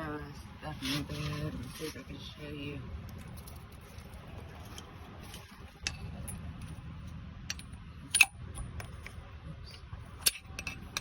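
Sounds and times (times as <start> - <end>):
low background rumble: 0.0 - 11.0
tools clinking on engine parts: 3.1 - 11.0.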